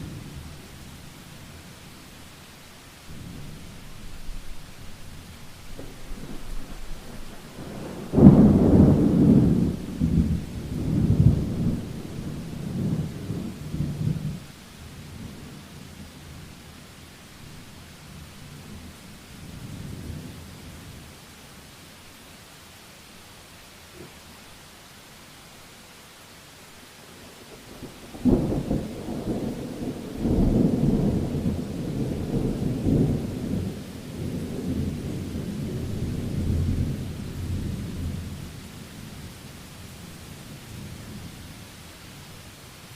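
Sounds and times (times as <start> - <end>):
rain hiss: 0.0 - 42.9
thunder rumbling: 3.1 - 16.4, 27.7 - 39.1.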